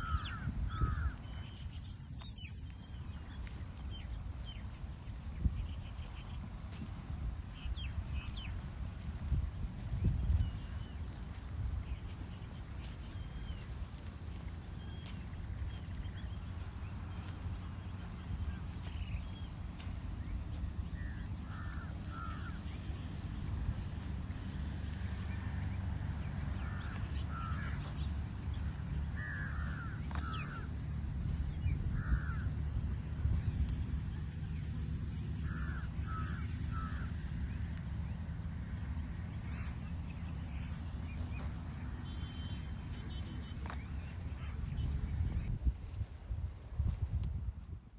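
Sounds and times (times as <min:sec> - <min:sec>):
crows cawing: 0:00.0 - 0:01.6, 0:20.9 - 0:23.2, 0:26.4 - 0:31.0, 0:31.6 - 0:32.7, 0:35.4 - 0:37.6
high-pitched insect drone: 0:00.0 - 0:47.9
small birds chirping: 0:00.0 - 0:47.9.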